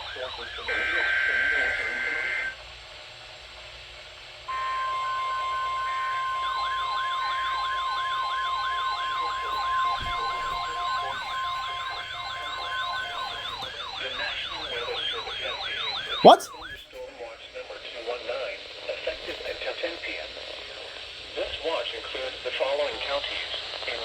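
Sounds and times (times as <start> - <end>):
steady warning tone: 4.5 - 16.8.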